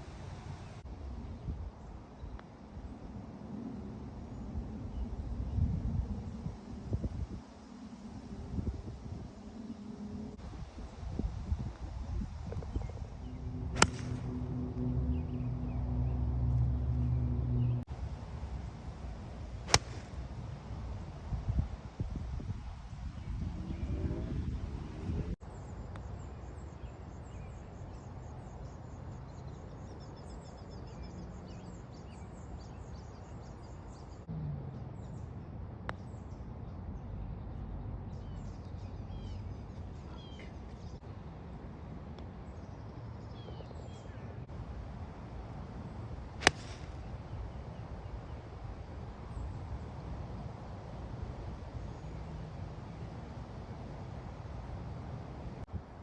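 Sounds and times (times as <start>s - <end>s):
outdoor background noise: 0.0s - 56.0s
golf club striking ball: 13.8s - 14.4s, 19.7s - 20.3s, 46.4s - 47.2s.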